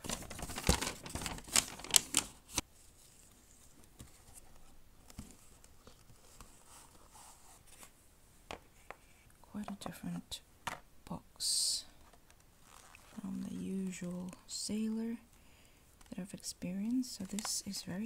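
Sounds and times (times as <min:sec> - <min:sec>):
wrapping paper crinkling: 0:00.0 - 0:03.5, 0:12.6 - 0:13.7.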